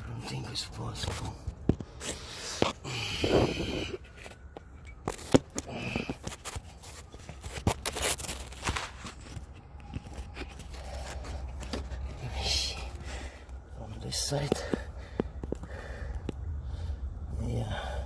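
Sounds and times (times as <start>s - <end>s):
steady low rumble: 0.0s - 18.0s
scrapes and knocks of handling parts: 4.0s - 13.1s.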